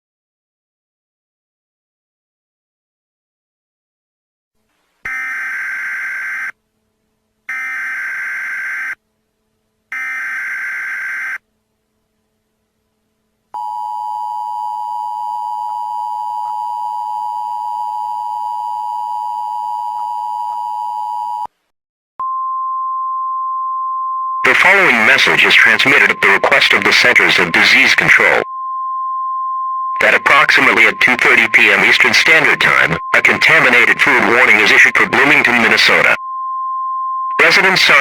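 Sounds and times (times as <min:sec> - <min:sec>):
steady beep-like tone: 0:22.2 - 0:38.0
two-tone attention signal: 0:22.2 - 0:38.0.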